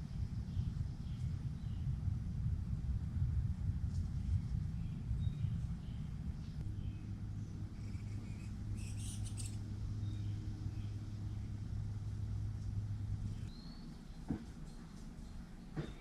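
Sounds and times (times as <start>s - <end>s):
steady low hum: 0.0s - 16.0s
faint bird chirps: 6.7s - 11.0s.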